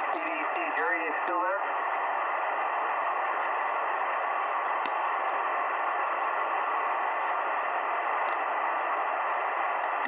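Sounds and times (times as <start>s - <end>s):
faint static clicks: 0.0s - 0.9s, 2.6s - 3.9s, 4.6s - 6.4s, 7.2s - 10.0s
shortwave radio hiss: 0.0s - 10.0s.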